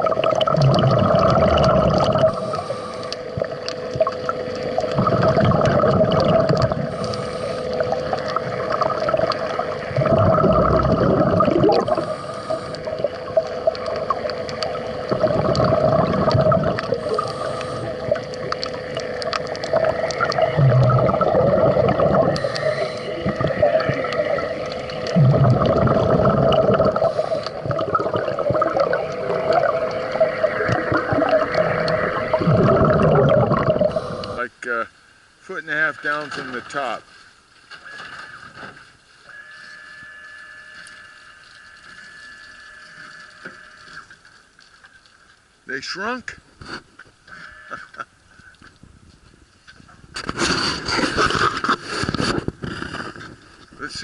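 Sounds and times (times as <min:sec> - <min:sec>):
exhaled bubbles rushing: 0:00.0 - 0:34.4
steady hum: 0:00.0 - 0:36.6
regulator inhale hiss: 0:02.2 - 0:03.4, 0:06.7 - 0:08.2, 0:11.9 - 0:13.3, 0:16.8 - 0:18.4, 0:22.3 - 0:23.6, 0:26.9 - 0:27.8, 0:33.8 - 0:34.4.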